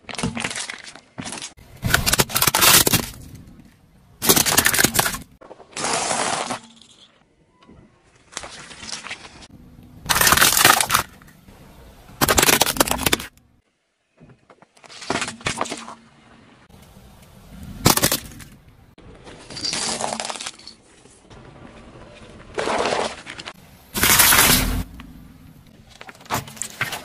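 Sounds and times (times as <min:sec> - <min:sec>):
objects crushed under tyres: 0:00.0 - 0:07.1, 0:08.2 - 0:11.4, 0:12.1 - 0:13.4, 0:17.6 - 0:21.0, 0:21.9 - 0:27.0.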